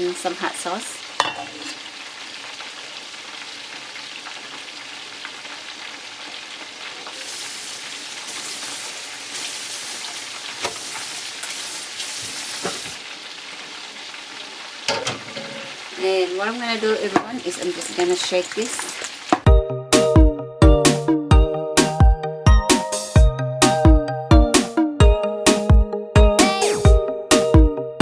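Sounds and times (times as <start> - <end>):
chicken wings deep-frying in oil: 0.0 - 19.5.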